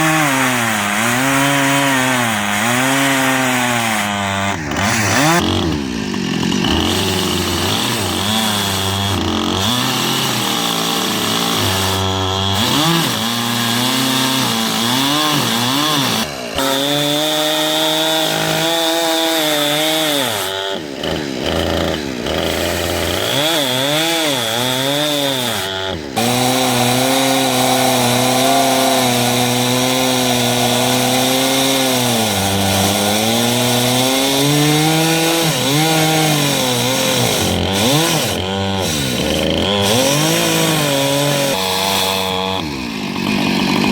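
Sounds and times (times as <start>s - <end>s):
chainsaw cutting log: 0.0s - 43.9s.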